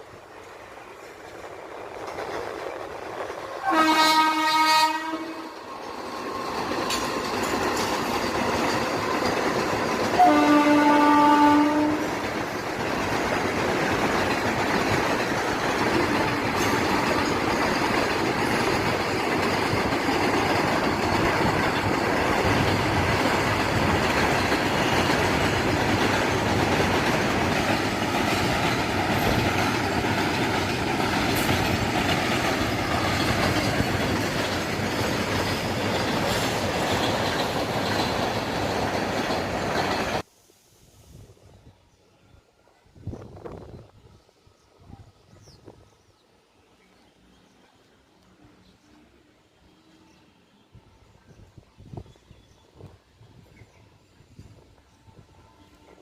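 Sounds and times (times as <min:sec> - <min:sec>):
passing train rumble and clatter: 0:00.0 - 0:56.0
train horn blasts: 0:03.6 - 0:05.6, 0:10.2 - 0:12.1, 0:55.1 - 0:56.0.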